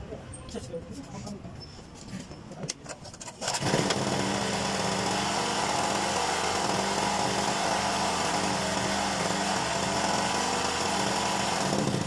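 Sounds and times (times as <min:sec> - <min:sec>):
generator engine running: 0:03.4 - 0:12.0.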